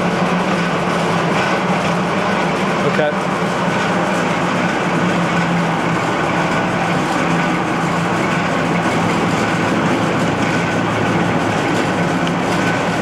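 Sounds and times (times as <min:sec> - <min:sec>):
band saw running: 0:03.3 - 0:13.0.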